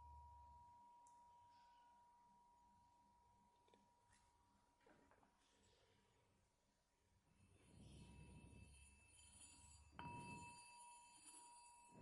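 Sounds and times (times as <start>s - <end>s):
thin steady high tone: 7.2s - 12.0s.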